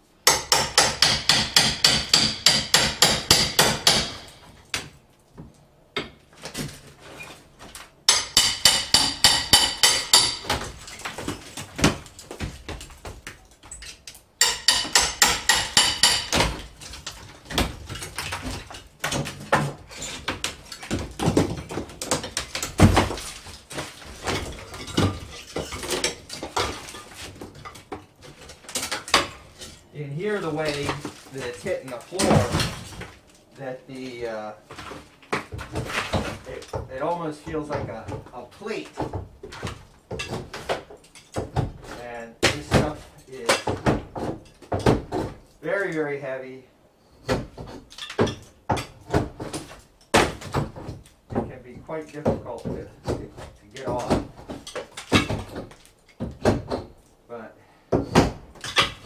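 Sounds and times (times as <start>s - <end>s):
rapid sharp strikes on plaster: 0.2s - 4.3s, 8.1s - 10.7s, 14.4s - 16.6s
plaster pieces hitting the floor: 2.0s - 29.8s, 30.6s - 33.4s, 34.7s - 36.9s, 39.0s - 45.5s, 52.2s - 57.0s, 57.9s - 59.0s.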